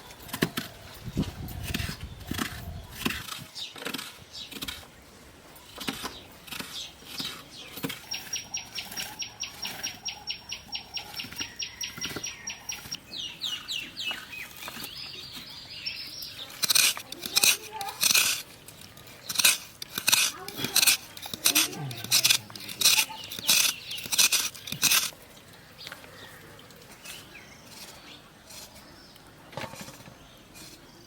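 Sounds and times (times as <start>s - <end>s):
bird chirps: 5.8s - 16.7s.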